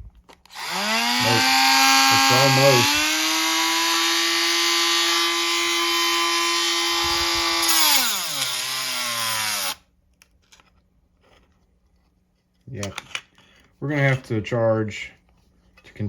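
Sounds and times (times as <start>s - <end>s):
rotary tool whining: 0.4s - 9.8s.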